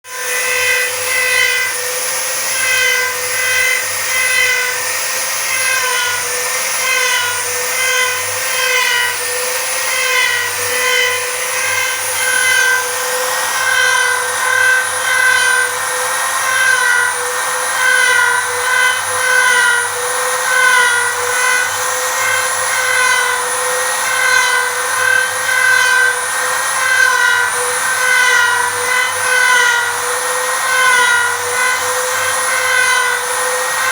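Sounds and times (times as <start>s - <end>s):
router spindle whine cutting wood: 0.0s - 33.9s.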